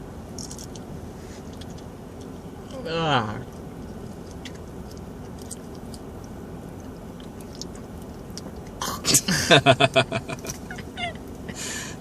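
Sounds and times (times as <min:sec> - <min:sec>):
faint crunching chewing: 0:03.4 - 0:08.8
loud laughter: 0:09.1 - 0:11.1.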